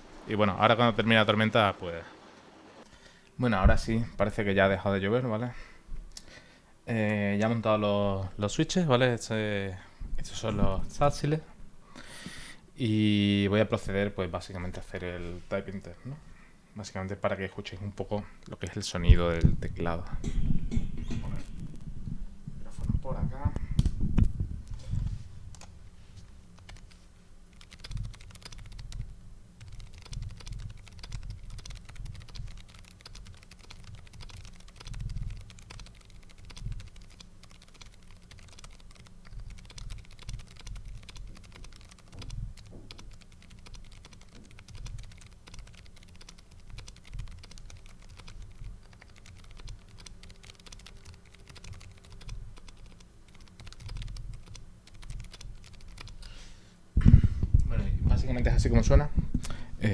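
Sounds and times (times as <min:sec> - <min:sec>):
keyboard keystrokes: 0:27.5 - 0:56.3.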